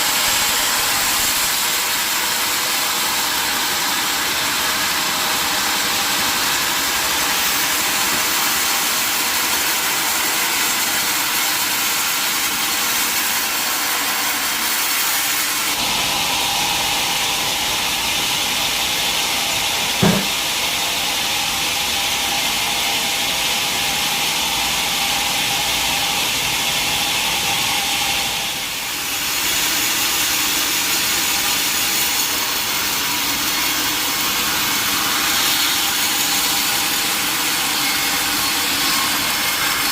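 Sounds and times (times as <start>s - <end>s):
saw cutting through log: 0.0s - 39.9s
sharp knock: 20.0s - 20.4s.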